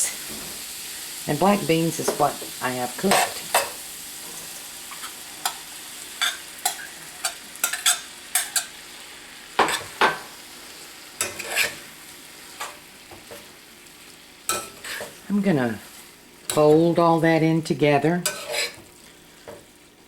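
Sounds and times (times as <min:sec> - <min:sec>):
food sizzling in a skillet: 0:00.0 - 0:20.0
utensil scraping a pan: 0:11.2 - 0:11.9, 0:14.5 - 0:15.2, 0:18.2 - 0:19.6.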